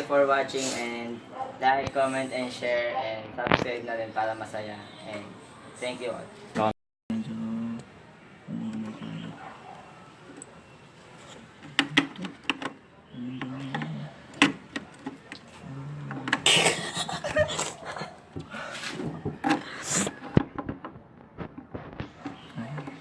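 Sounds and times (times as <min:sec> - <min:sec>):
quiet voices: 0:04.7 - 0:20.6, 0:22.0 - 0:23.0
rustling noise: 0:18.6 - 0:23.0.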